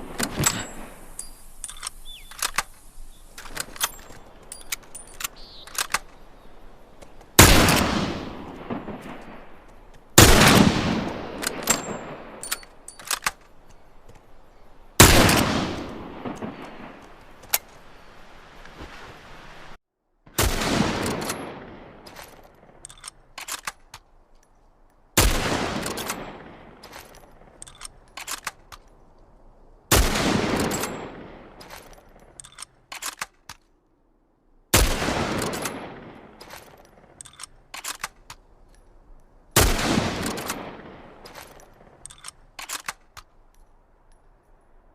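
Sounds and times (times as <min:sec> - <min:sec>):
rifle shots echoing: 0:07.4 - 0:13.3, 0:15.0 - 0:17.1, 0:20.3 - 0:22.8, 0:25.2 - 0:27.9, 0:29.9 - 0:32.4, 0:34.7 - 0:38.2, 0:39.6 - 0:42.8.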